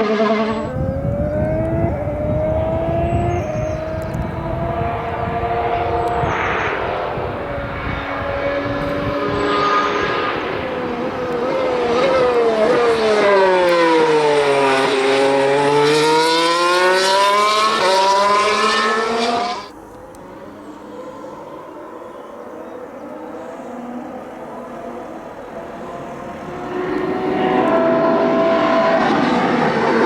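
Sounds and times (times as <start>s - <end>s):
racing car engine shifting gears: 0.0s - 30.0s.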